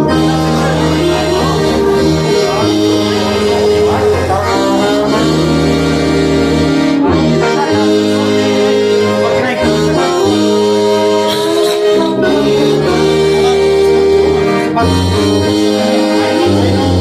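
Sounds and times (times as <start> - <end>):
hymn played in slow chords: 0.0 - 17.0.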